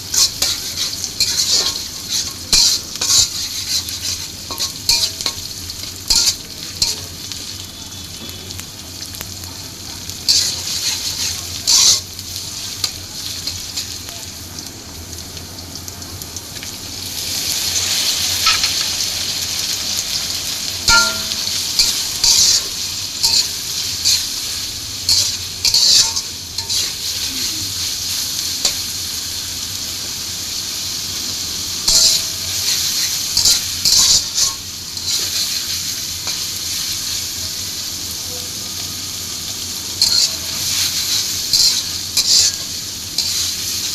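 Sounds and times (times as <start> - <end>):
food sizzling in a pan: 0.0 - 43.9
spatula scraping a pan: 0.1 - 7.0, 10.3 - 14.0, 20.9 - 28.9, 31.8 - 37.1, 40.0 - 43.9.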